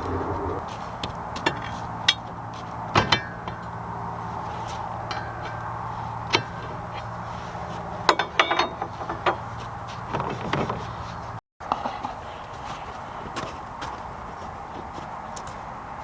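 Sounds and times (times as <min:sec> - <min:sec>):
steady low hum: 0:00.0 - 0:16.0
hand tools clinking on metal: 0:05.0 - 0:07.0, 0:08.1 - 0:09.5.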